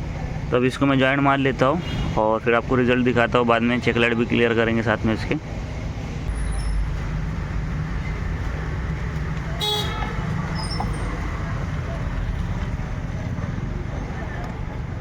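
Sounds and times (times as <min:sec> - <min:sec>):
road traffic rumble: 0:00.0 - 0:15.0
vehicle horn toot: 0:09.6 - 0:11.1.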